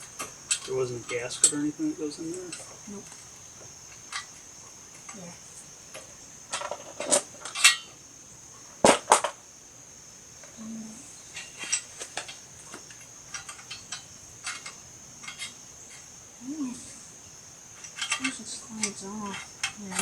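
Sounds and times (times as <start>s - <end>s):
metal clinks and knocks: 0.0s - 1.6s, 6.0s - 8.0s, 11.3s - 16.1s, 17.7s - 20.0s.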